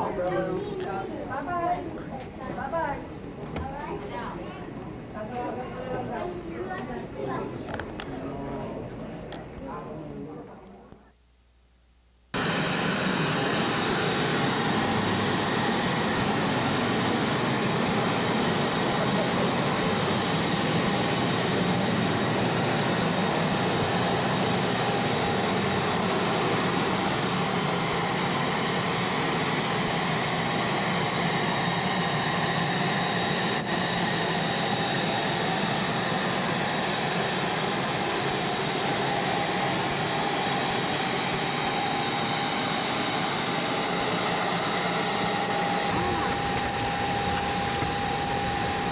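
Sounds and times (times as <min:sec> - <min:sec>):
faint whines: 0:07.0 - 0:48.9
airliner engines and airflow rushing: 0:12.4 - 0:48.9.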